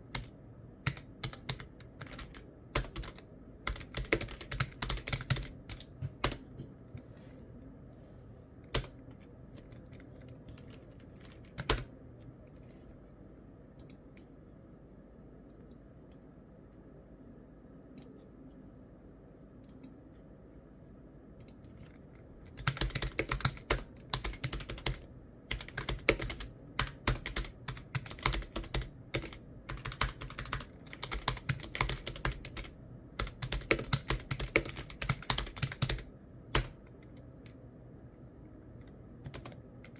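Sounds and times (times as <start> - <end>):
typing on computer keyboard: 0.0 - 6.6, 8.7 - 12.0, 21.4 - 37.6, 38.8 - 39.9.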